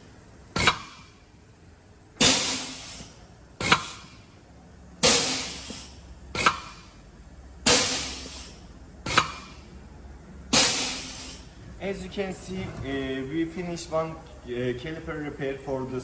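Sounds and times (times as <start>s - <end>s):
compressed air hiss: 2.2s - 4.2s, 5.0s - 6.9s, 7.6s - 9.6s, 10.5s - 11.6s.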